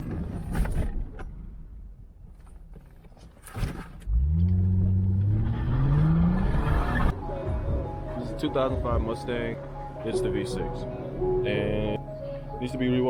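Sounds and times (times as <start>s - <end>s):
vehicle engine humming: 4.1s - 10.0s.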